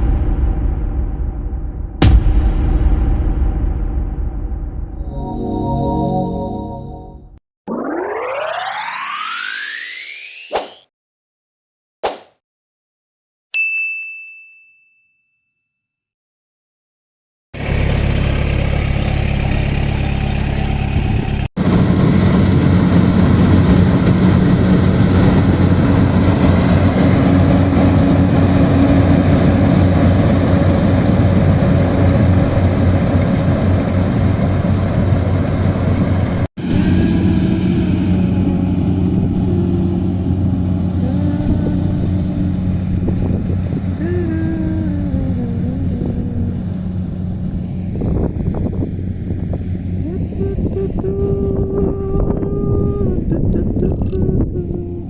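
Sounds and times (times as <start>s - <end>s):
short chime-like ding: 13.6s - 15.9s
combine harvester diesel engine: 17.6s - 51.6s.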